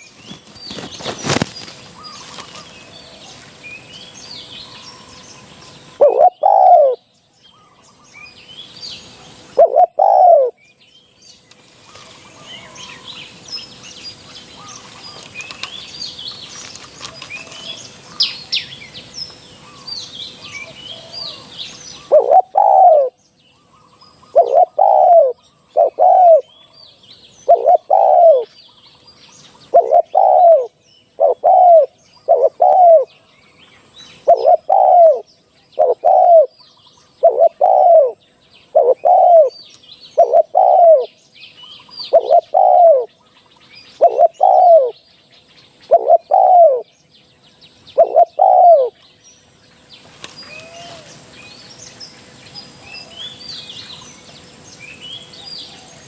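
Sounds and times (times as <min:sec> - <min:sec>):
small birds chirping: 0:00.0 - 0:56.0
dove cooing: 0:04.7 - 0:07.0, 0:09.3 - 0:10.6, 0:19.6 - 0:23.2, 0:24.2 - 0:26.6, 0:27.4 - 0:28.5, 0:29.6 - 0:33.1, 0:34.1 - 0:36.6, 0:37.2 - 0:41.1, 0:42.0 - 0:43.2, 0:43.9 - 0:45.0, 0:45.9 - 0:46.9, 0:47.9 - 0:49.0, 0:50.4 - 0:51.2.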